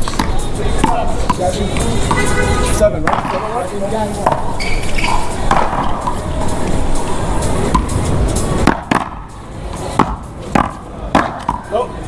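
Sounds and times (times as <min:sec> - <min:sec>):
paddle striking ball: 0:00.0 - 0:02.4, 0:03.0 - 0:06.3, 0:07.7 - 0:08.0, 0:08.6 - 0:11.7
outdoor background noise: 0:00.0 - 0:12.0.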